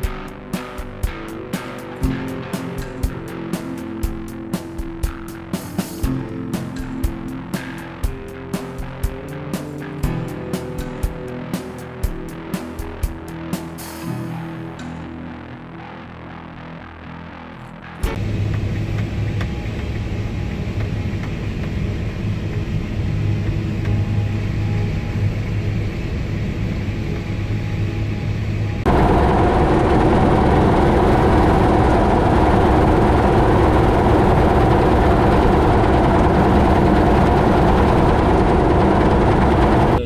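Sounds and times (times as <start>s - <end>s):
combine harvester engine hum: 18.2s - 40.0s.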